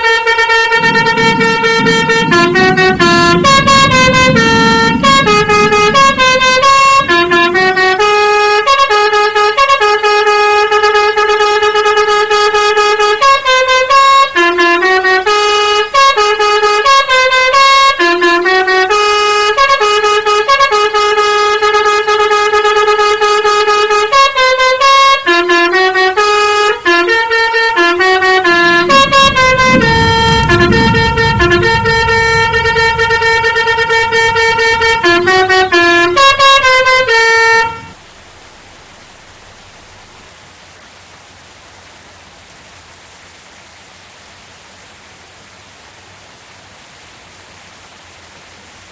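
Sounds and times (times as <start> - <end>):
low rumble: 0.0 - 8.6, 28.0 - 40.3
multi-tone bus air horn melody: 0.0 - 38.0.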